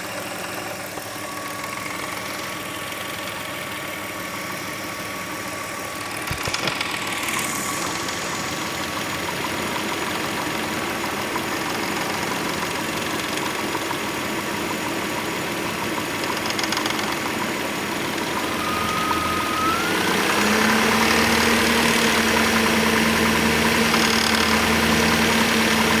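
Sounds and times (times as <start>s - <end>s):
engine rattle: 5.9s - 26.0s
car engine idling: 17.8s - 26.0s
steady hum: 18.3s - 26.0s.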